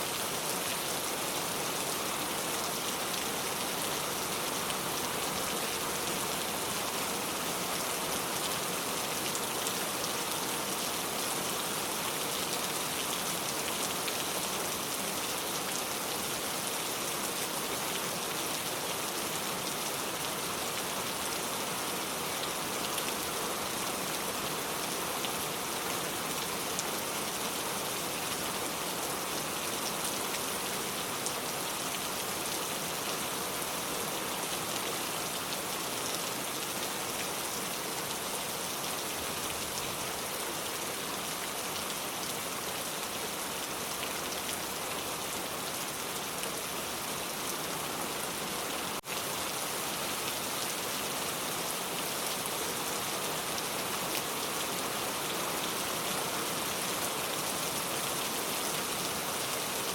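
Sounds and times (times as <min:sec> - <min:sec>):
steady rain hiss: 0:00.0 - 0:59.9.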